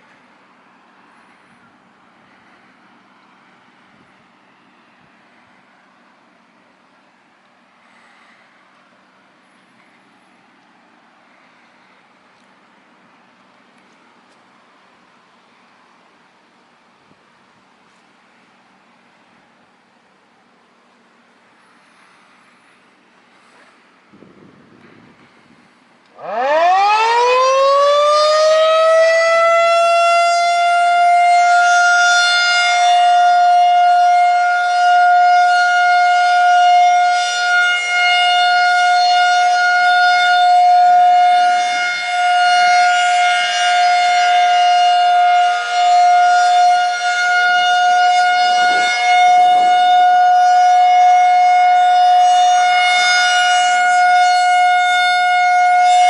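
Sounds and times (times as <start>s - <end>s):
rotating warning siren: 26.1s - 56.0s.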